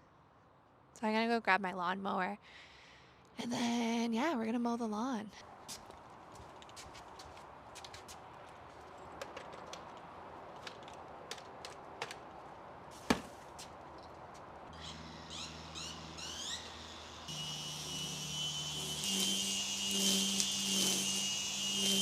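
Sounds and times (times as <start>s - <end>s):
clicks and knocks of handling: 6.6s - 12.3s
small motor whining: 14.8s - 22.0s.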